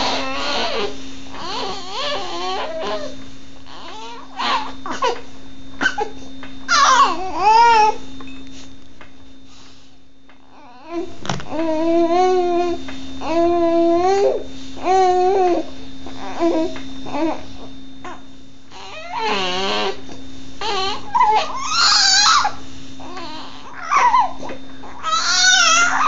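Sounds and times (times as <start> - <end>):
baby babbling and crying: 0.0 - 5.2, 6.7 - 8.0.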